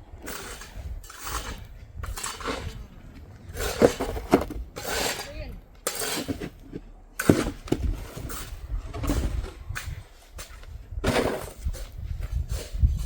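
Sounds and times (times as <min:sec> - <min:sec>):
wind rumble on microphone: 0:00.0 - 0:04.8, 0:07.6 - 0:13.0
shovels scraping snow: 0:00.2 - 0:13.0.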